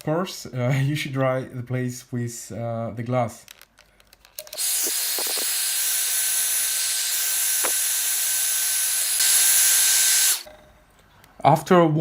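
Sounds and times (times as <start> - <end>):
hair dryer blowing with whine: 4.6 - 10.5.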